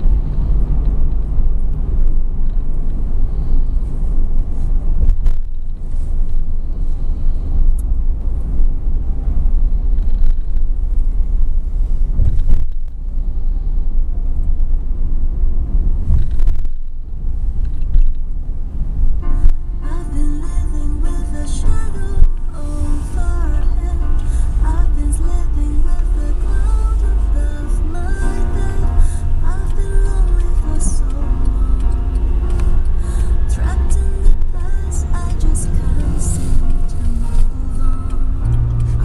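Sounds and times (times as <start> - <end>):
road and engine rumble in car: 0.0 - 39.0.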